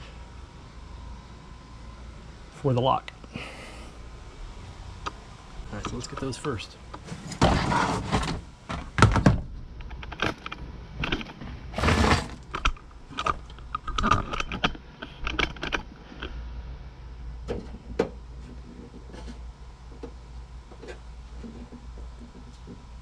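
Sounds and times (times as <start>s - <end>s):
plastic rattling and scraping: 7.0s - 15.9s, 17.5s - 19.4s.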